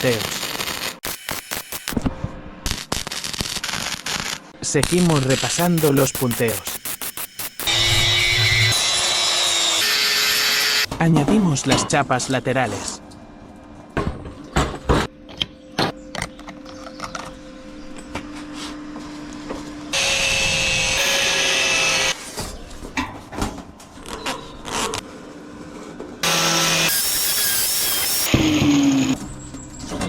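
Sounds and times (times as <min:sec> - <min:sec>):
power tool noise: 0:05.2 - 0:10.9, 0:19.9 - 0:22.2, 0:26.2 - 0:29.2.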